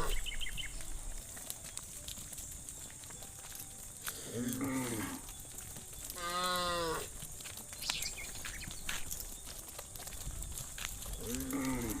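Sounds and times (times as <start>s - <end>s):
cattle mooing: 4.3s - 5.2s, 11.2s - 12.0s.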